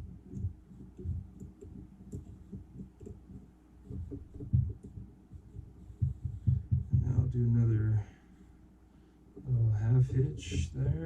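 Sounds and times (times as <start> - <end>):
soft clicks and light knocks: 0.3 - 7.2.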